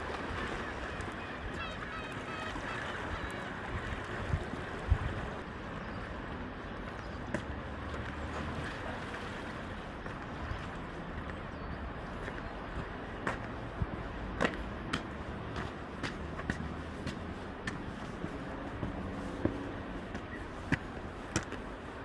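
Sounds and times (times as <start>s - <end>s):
strong wind around a car: 3.7s - 6.9s.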